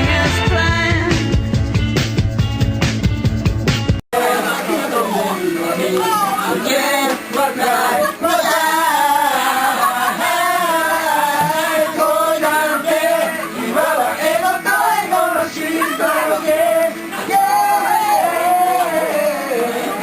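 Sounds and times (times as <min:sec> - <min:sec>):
music: 0:00.0 - 0:05.0, 0:06.7 - 0:20.0
male and female voices singing: 0:04.2 - 0:20.0.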